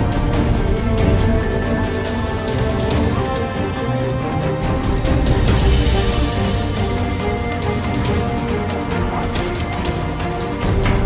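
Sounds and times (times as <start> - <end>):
dramatic background music: 0.0 - 11.0.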